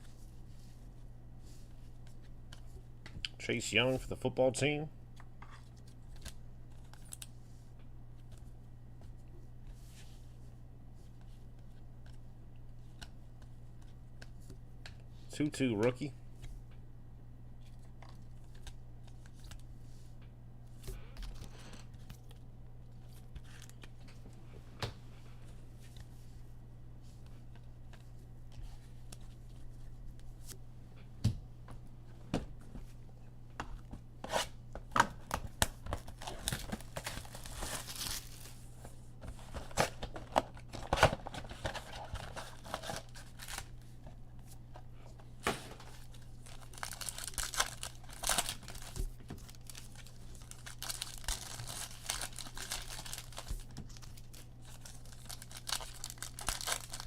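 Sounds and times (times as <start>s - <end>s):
cards being handled: 33.7s - 57.0s
foil wrapper tearing and crinkling: 35.6s - 38.6s, 45.8s - 57.0s.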